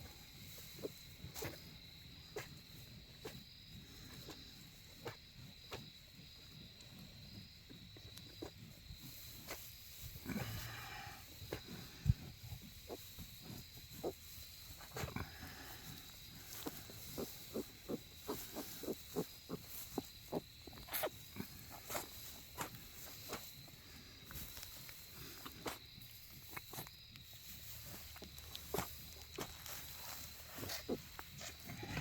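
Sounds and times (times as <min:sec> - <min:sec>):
sow grunting: 0:10.1 - 0:22.8, 0:28.0 - 0:32.0.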